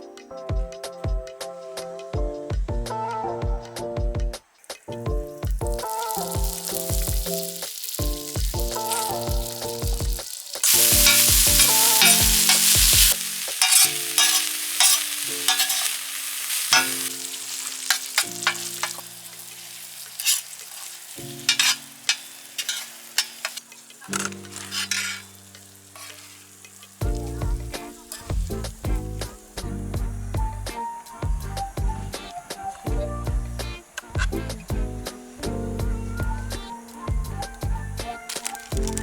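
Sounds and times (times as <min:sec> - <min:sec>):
background music: 0:00.0 - 0:39.0
food sizzling in a pan: 0:04.5 - 0:39.0
utensil clattering: 0:05.7 - 0:27.0.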